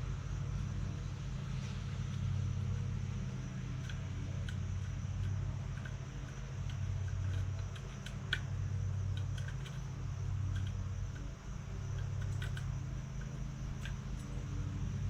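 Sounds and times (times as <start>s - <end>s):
low engine drone: 0.0s - 15.0s
light clicks: 3.5s - 15.0s.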